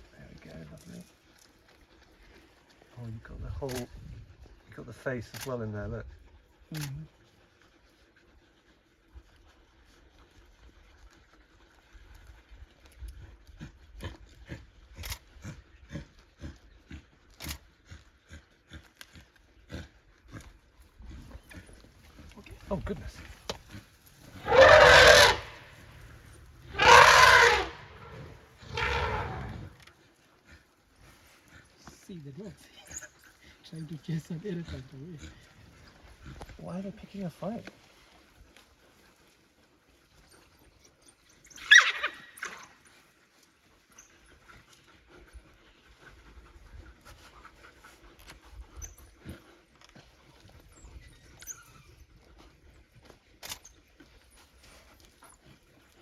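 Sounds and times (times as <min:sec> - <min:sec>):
wild dogs chirping: 0:23.7 - 0:29.8, 0:41.4 - 0:42.7
elephant trumpeting: 0:24.3 - 0:29.8, 0:41.6 - 0:42.3.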